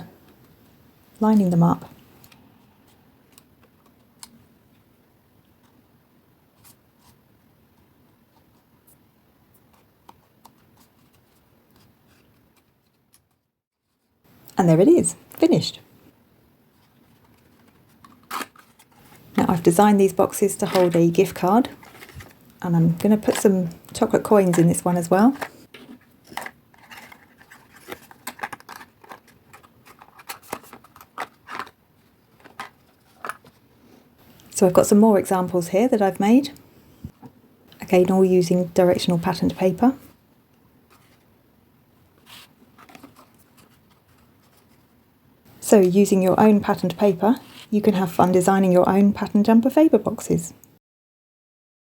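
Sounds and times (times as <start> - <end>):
paper rustling: 16.7 - 23.8, 24.4 - 33.7, 42.2 - 44.9.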